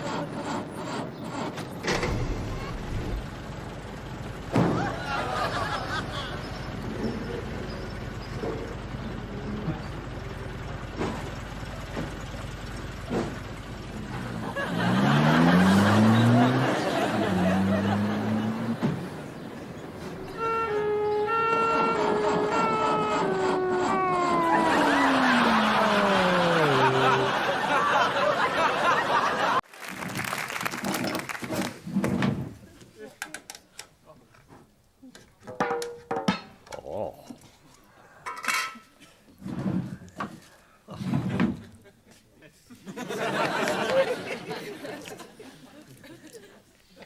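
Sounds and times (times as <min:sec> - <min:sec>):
vehicle engine revving: 0:00.0 - 0:29.6
audience laughter: 0:04.6 - 0:07.5, 0:14.2 - 0:19.6, 0:24.3 - 0:29.6, 0:41.7 - 0:47.0
tone sliding down in steps: 0:20.0 - 0:28.7.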